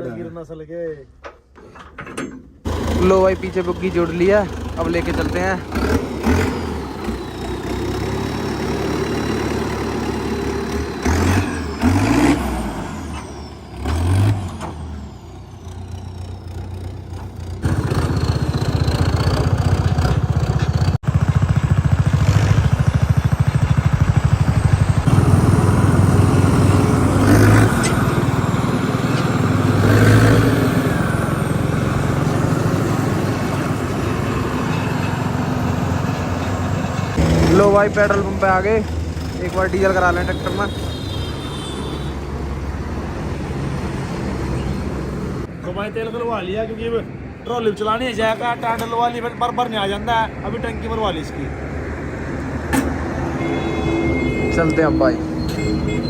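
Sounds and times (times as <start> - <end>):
tractor diesel engine revving: 2.7 - 41.0.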